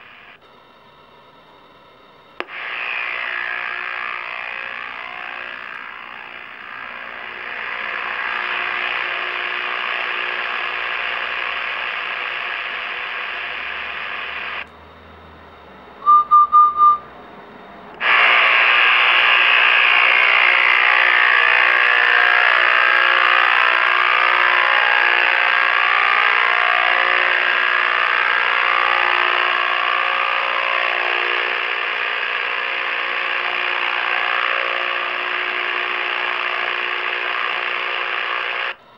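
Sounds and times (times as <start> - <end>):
radio speaker buzzing harshly: 0.0 - 0.4, 2.3 - 14.7, 17.9 - 38.9
short beeps: 15.5 - 17.8.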